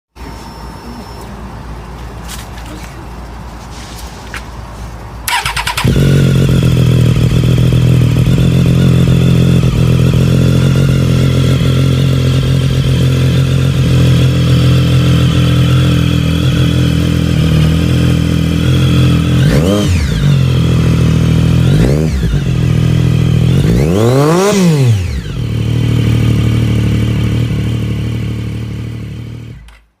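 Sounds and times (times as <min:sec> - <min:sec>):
motorcycle starter whine: 0:05.3 - 0:16.7
motorcycle engine idling and revving: 0:05.3 - 0:30.0.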